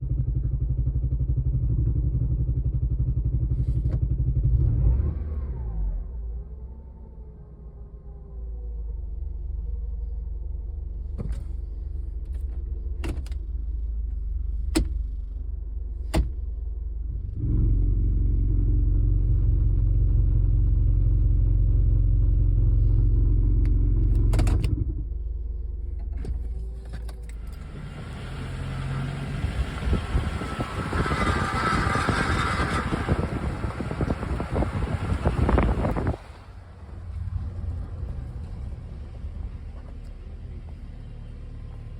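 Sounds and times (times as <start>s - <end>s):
car engine and exhaust running: 0.0s - 41.9s
rough rattling exhaust noise: 27.4s - 40.8s.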